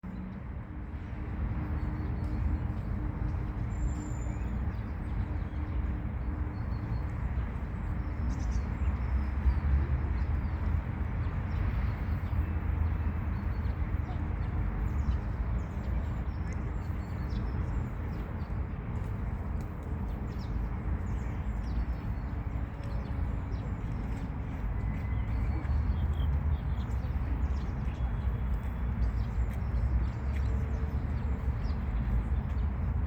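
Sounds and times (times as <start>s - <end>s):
low traffic rumble: 0.0s - 33.0s.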